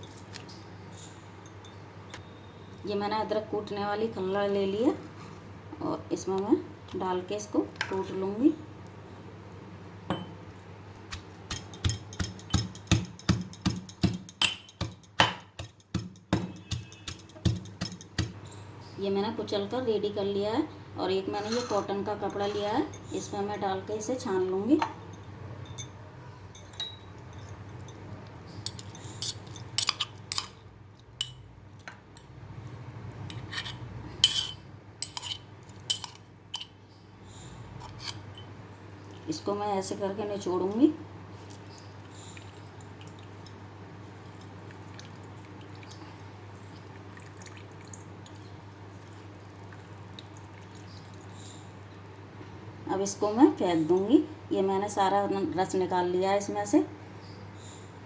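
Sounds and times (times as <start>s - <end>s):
utensils clinking and scraping mortar: 11.1s - 18.4s, 21.3s - 24.1s, 26.6s - 30.6s, 33.3s - 36.7s
pestle pounding in a mortar: 11.5s - 18.4s.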